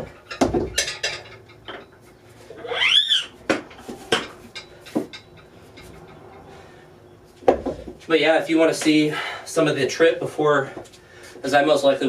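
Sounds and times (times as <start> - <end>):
hard objects clinking and knocking: 0.0 - 2.1, 3.5 - 6.5
short rising squeak: 2.5 - 3.4.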